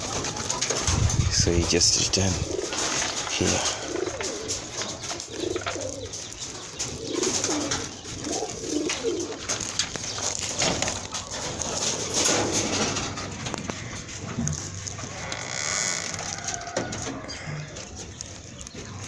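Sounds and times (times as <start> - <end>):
pigeons cooing: 0.0 - 19.0.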